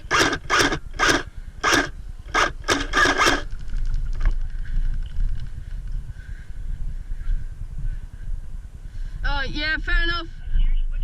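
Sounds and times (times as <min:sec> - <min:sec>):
airsoft rifle shots: 0:00.0 - 0:03.6
faint rapid rattle of fire: 0:00.0 - 0:06.5.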